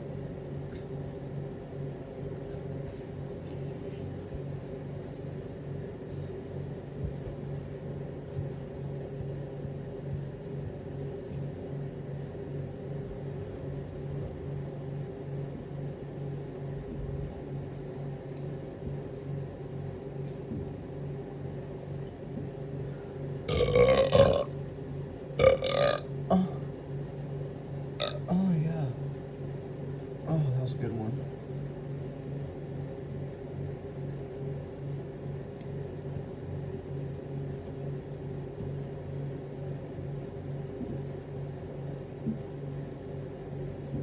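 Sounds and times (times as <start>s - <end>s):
steady low hum: 0.0s - 44.0s
person burping: 23.5s - 24.5s, 25.4s - 26.6s, 28.0s - 28.4s.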